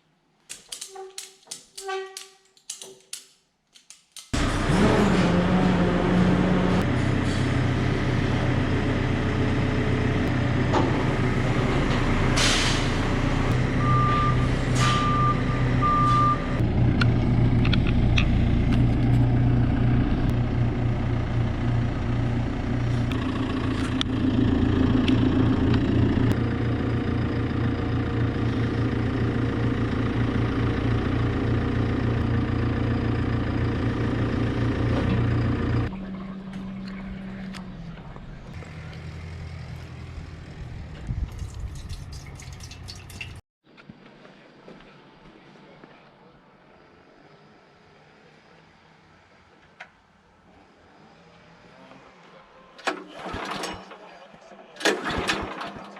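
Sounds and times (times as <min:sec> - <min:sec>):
engine running: 0:04.4 - 0:42.9
reversing alarm beeping: 0:13.8 - 0:16.6.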